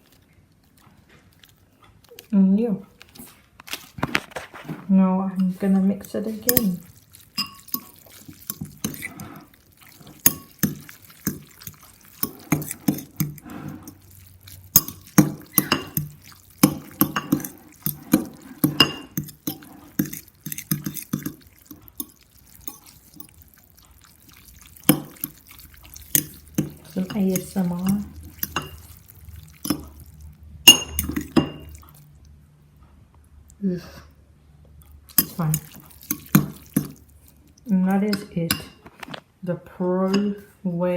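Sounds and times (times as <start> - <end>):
wet noodles squelching: 0.0 - 32.4, 34.8 - 39.2
utensil clinking against bowl: 5.4 - 32.0, 35.1 - 37.1, 37.9 - 38.9.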